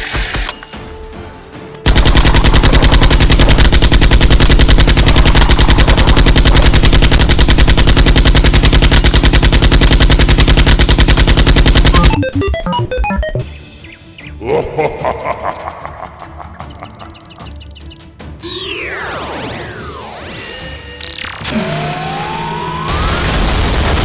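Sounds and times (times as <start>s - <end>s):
rapid machine-gun fire: 1.8s - 12.2s, 22.9s - 24.0s
scattered clicks: 1.9s - 13.2s.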